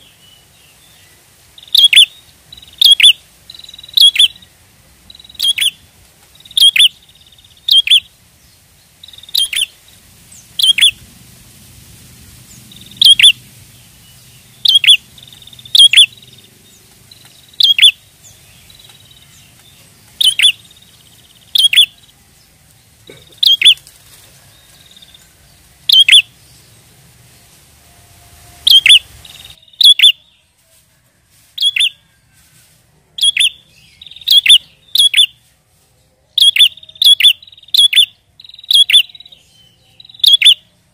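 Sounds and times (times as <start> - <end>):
bird chirping sharply: 1.6 - 4.5, 5.1 - 5.8, 6.4 - 8.1, 9.0 - 9.8, 10.4 - 11.0, 12.5 - 22.1, 23.4 - 23.8, 25.8 - 26.7, 28.6 - 30.4, 31.6 - 32.0, 33.2 - 35.4, 36.4 - 40.6.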